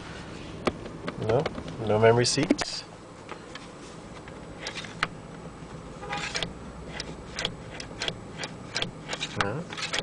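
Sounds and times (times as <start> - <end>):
steady low hum: 0.0 - 10.0
seat buttons clicking: 6.4 - 10.0.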